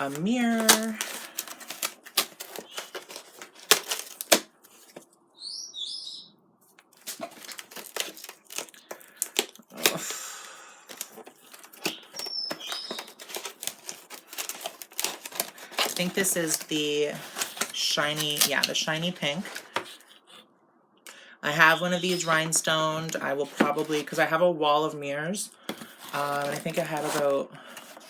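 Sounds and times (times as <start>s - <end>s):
tissue paper rustling: 0.0s - 5.0s, 7.0s - 9.2s, 10.9s - 20.0s, 25.7s - 28.0s.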